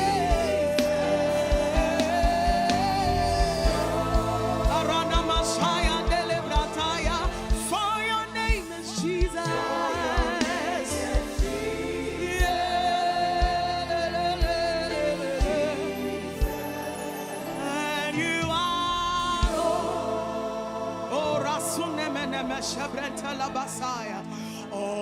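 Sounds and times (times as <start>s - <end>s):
band sustained accompaniment: 0.0s - 25.0s
voices singing with vibrato: 0.0s - 25.0s
thumping drum beat: 0.3s - 7.8s.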